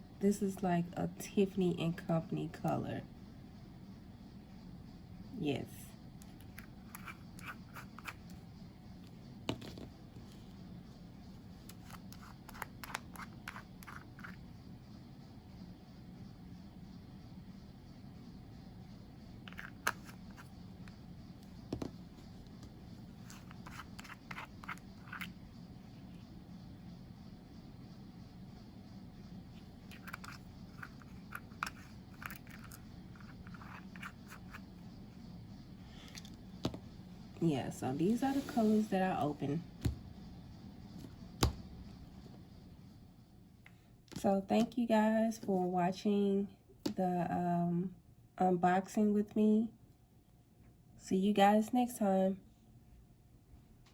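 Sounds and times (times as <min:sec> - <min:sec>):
low steady hum: 0:00.0 - 0:53.9
small clicks and scrapes: 0:06.2 - 0:08.4, 0:11.6 - 0:14.4, 0:19.5 - 0:20.6, 0:23.2 - 0:25.4, 0:29.9 - 0:34.7
small items being handled: 0:21.7 - 0:25.4, 0:29.9 - 0:34.7.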